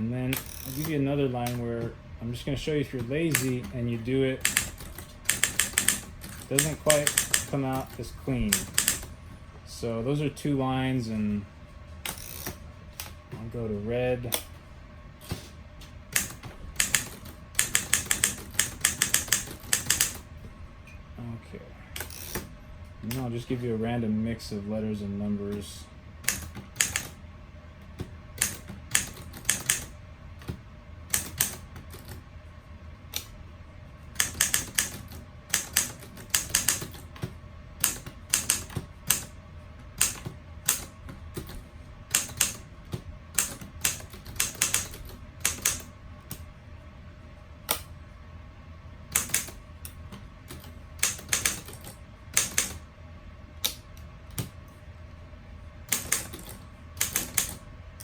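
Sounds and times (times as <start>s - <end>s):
typewriter keys clacking: 3.3s - 3.8s, 4.4s - 9.1s, 16.1s - 20.2s, 26.2s - 27.1s, 28.4s - 29.9s, 31.1s - 32.2s, 34.2s - 37.2s, 37.8s - 39.3s, 40.0s - 42.6s, 43.4s - 45.9s, 49.2s - 49.6s, 50.5s - 52.8s, 55.9s - 57.6s.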